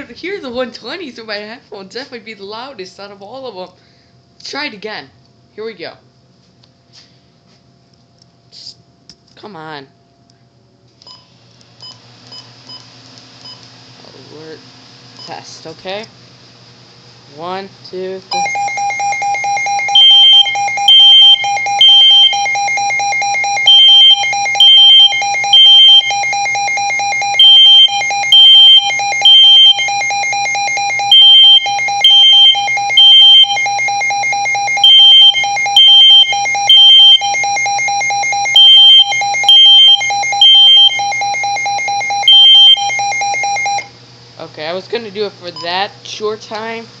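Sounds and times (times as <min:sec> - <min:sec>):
smoke alarm beeping: 0:18.3 - 0:43.9.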